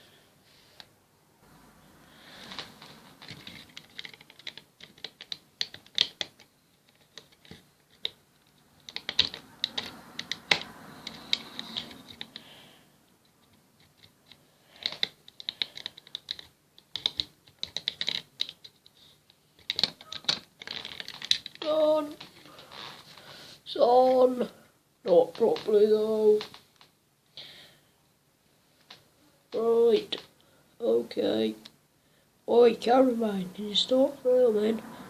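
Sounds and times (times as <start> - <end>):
rapid light clicking and tapping: 2.5 - 12.5, 13.2 - 21.7.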